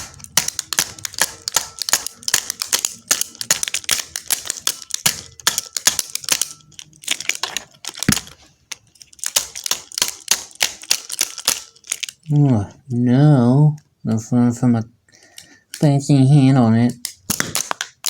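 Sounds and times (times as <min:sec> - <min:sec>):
hard objects clicking and tapping: 0:00.0 - 0:12.4, 0:16.9 - 0:18.0.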